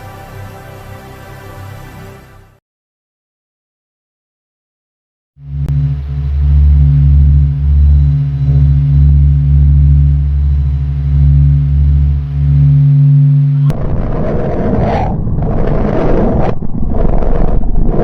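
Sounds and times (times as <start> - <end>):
deep throbbing drone: 5.4 - 18.0.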